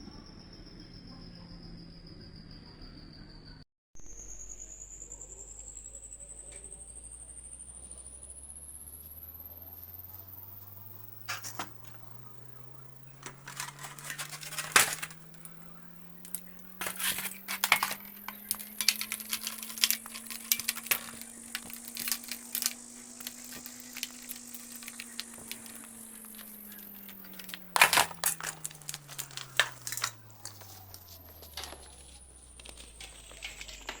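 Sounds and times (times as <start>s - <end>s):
dry clay crumbling: 11.3s - 34.0s.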